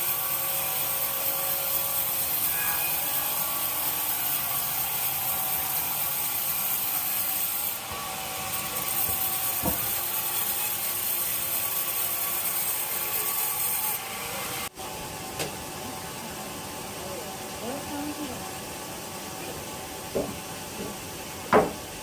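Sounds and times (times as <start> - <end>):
saw cutting through wood: 0.0 - 14.8.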